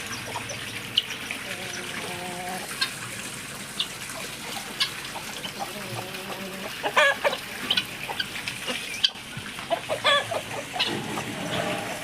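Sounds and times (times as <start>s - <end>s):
chickens clucking: 0.0s - 3.0s, 3.8s - 12.0s
drawn-out chicken calls: 4.6s - 12.0s.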